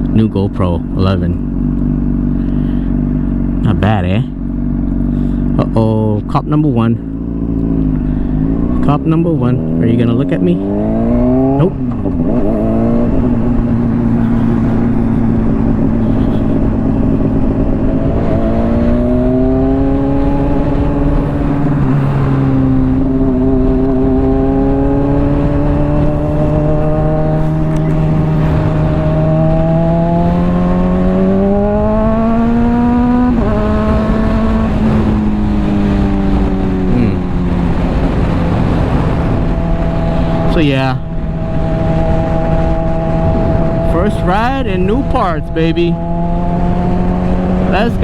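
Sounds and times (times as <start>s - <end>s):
motorcycle engine running: 0.0s - 48.0s
wind rush: 10.5s - 48.0s.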